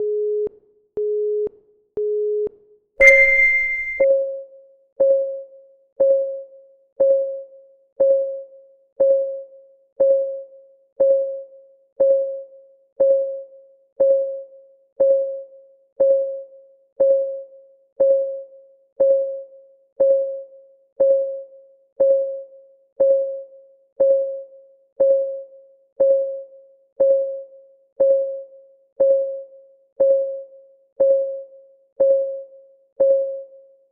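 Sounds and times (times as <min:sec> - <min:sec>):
higher start tone: 0:03.0 - 0:04.0
electronic clock tick: 0:03.0 - 0:04.1
short steady beeps: 0:03.0 - 0:04.1.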